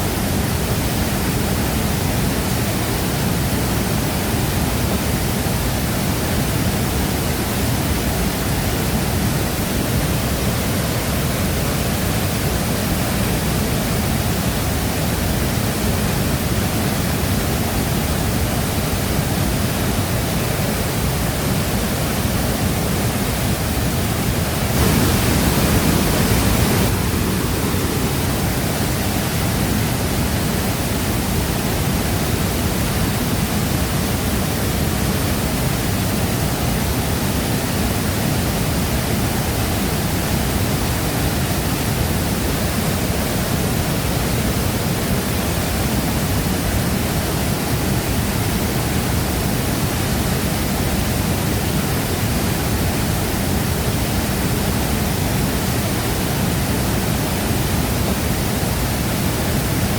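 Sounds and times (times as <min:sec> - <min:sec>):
waterfall rushing: 0:00.0 - 0:59.9.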